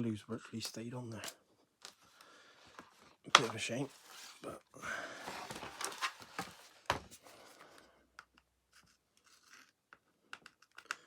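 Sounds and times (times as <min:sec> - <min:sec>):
plastic scratching and scraping: 0:02.7 - 0:07.6
sharp plastic clicks: 0:10.3 - 0:11.0.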